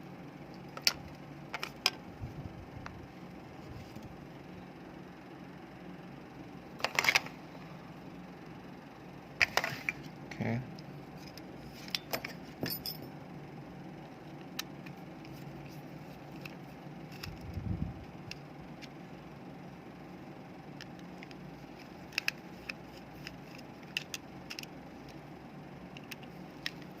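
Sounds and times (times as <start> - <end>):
plastic parts clicking and cracking: 0.6 - 2.0, 20.8 - 25.2, 25.9 - 27.0.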